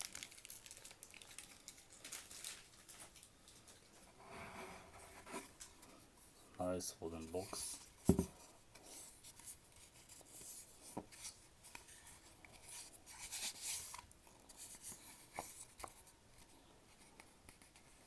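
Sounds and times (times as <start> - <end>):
hands rustling packaging: 0.0 - 4.0.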